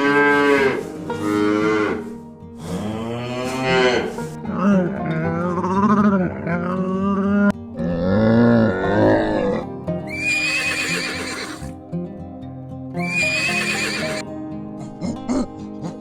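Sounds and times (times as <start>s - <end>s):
background music: 0.0s - 16.0s
horse whinnying: 10.1s - 11.8s, 13.0s - 14.2s.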